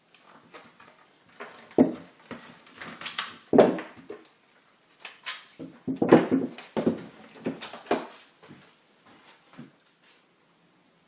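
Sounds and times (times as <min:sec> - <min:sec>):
handling knocks and bumps: 0:00.6 - 0:04.3, 0:05.6 - 0:08.2.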